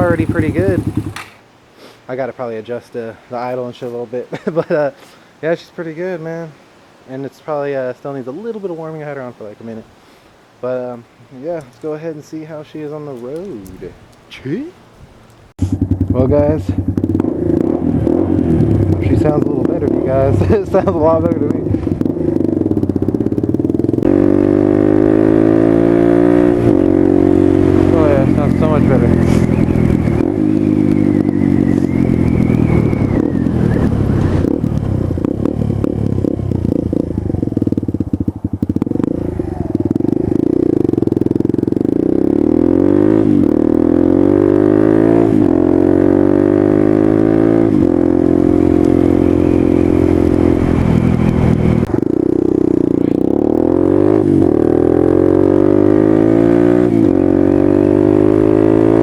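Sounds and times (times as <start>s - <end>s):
motorcycle engine accelerating: 0.0s - 1.4s, 15.6s - 59.0s.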